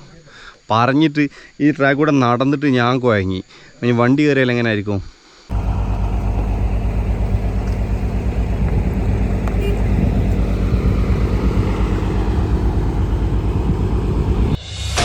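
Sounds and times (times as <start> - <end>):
off-road vehicle engine running: 5.5 - 14.6.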